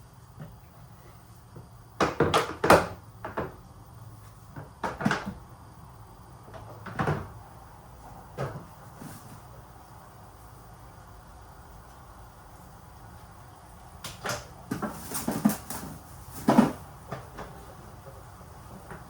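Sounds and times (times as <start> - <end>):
kitchen items knocking and clacking: 2.0 - 3.6.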